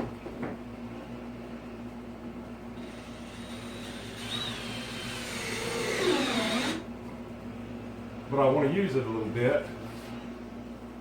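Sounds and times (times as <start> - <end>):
steady low hum: 0.0 - 11.0
drill motor whine: 2.8 - 6.8.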